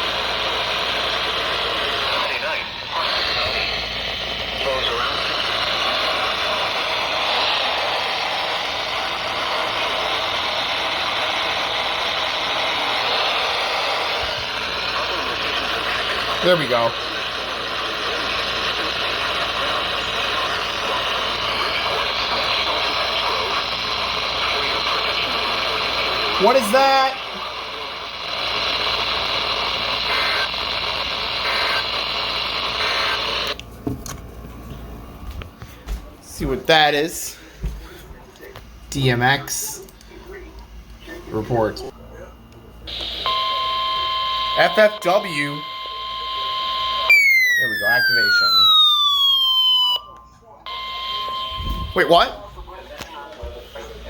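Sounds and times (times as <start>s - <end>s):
radio static hiss: 0.0s - 33.6s, 42.8s - 48.8s, 50.7s - 54.0s
alert data tone bursts: 42.9s - 50.0s.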